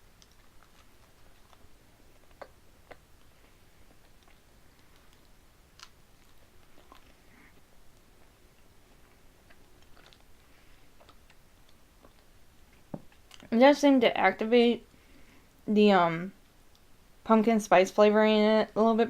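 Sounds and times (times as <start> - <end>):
chewing toasted bread: 0.0 - 13.5.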